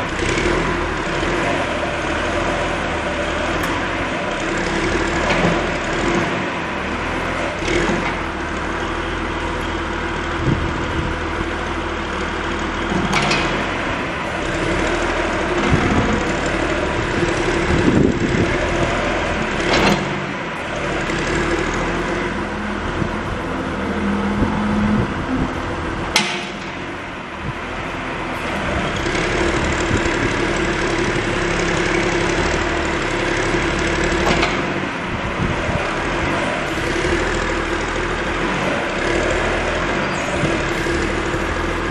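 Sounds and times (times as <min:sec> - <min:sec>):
diesel engine running: 0:00.0 - 0:41.9
sharp knocks: 0:26.1 - 0:26.8.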